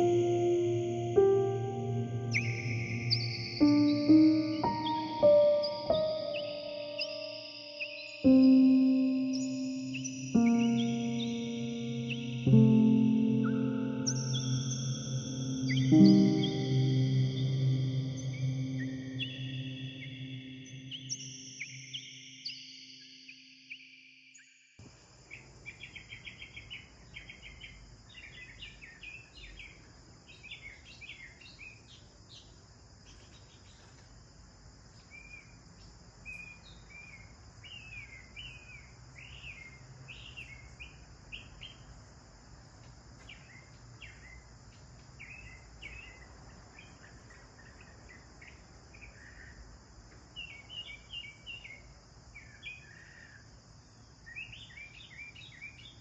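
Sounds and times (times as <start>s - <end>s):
high-pitched insect buzz: 0.0s - 23.5s
sparrows chirping: 0.0s - 23.8s, 25.3s - 34.2s, 35.0s - 56.0s.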